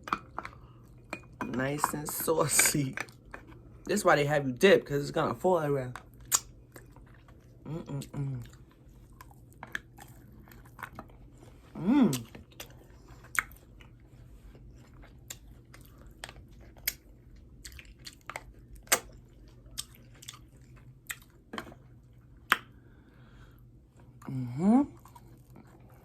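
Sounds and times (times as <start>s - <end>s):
chewing and biting chicken wings: 6.0s - 22.8s
wet mouth smacking clicks: 6.3s - 6.5s
short vocal sound: 11.8s - 12.2s.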